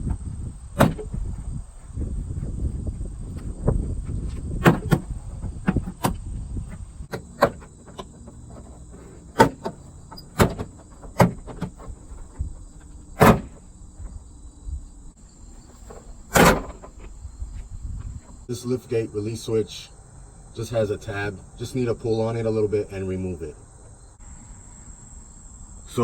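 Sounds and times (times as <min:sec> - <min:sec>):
low handling rumble: 0:00.0 - 0:19.1.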